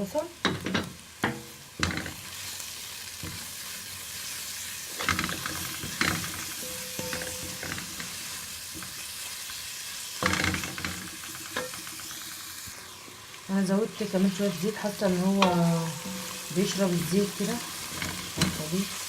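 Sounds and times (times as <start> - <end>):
onion sizzling in a pan: 0.0 - 19.0
spoon scraping a pan: 3.3 - 9.2, 15.4 - 19.0.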